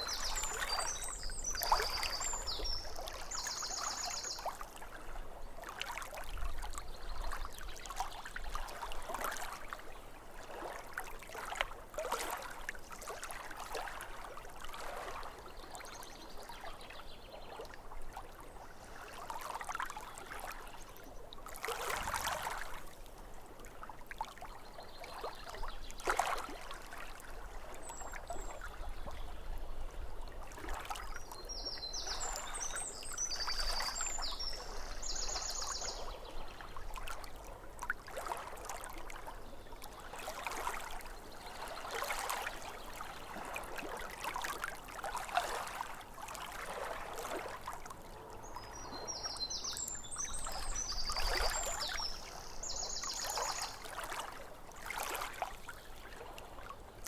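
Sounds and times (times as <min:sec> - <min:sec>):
small waves lapping on shore: 0:00.0 - 0:57.0.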